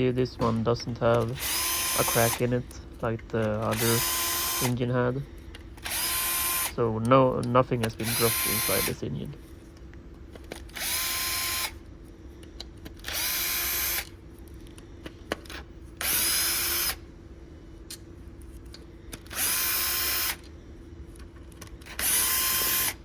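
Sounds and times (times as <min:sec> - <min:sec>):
power drill whining in bursts: 0:01.4 - 0:02.6, 0:03.6 - 0:04.8, 0:05.8 - 0:06.7, 0:08.0 - 0:09.0, 0:10.7 - 0:11.8, 0:13.0 - 0:14.1, 0:16.0 - 0:17.0, 0:19.2 - 0:20.4, 0:21.8 - 0:23.0.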